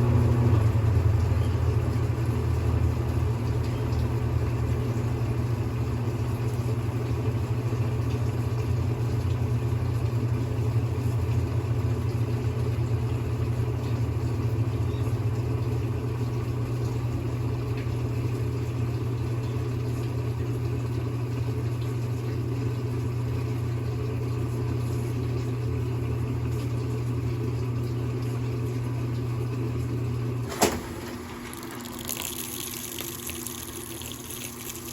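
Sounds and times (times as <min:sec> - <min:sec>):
washing machine motor humming: 0:00.0 - 0:34.9
washing machine click: 0:30.4 - 0:31.8
running water hissing: 0:30.8 - 0:34.9.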